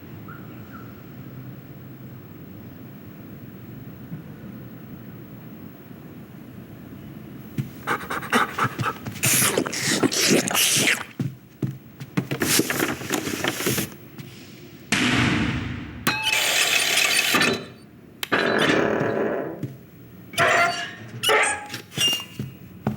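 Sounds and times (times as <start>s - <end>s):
clattering knocks and scuffs: 7.5s - 9.3s, 11.1s - 14.5s, 18.8s - 22.9s
loud bursts of hissing: 9.2s - 11.1s.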